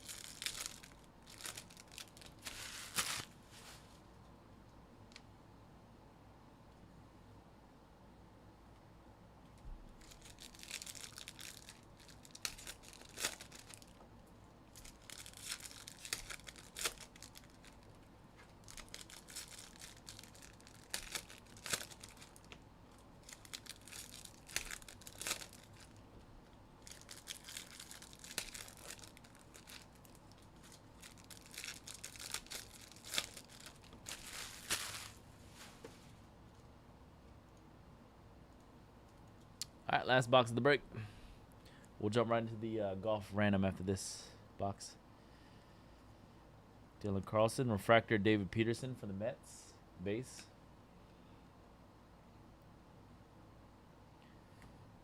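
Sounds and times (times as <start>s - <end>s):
foil wrappers tearing and crinkling: 0.0s - 3.4s, 10.0s - 14.0s, 14.7s - 18.0s, 18.6s - 26.0s, 26.8s - 35.2s.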